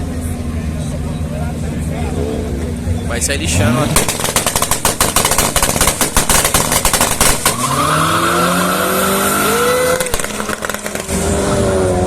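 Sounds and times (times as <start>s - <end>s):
car engine revving: 0.0s - 12.0s
drag car launch limiter pops: 3.8s - 8.2s, 9.5s - 11.4s.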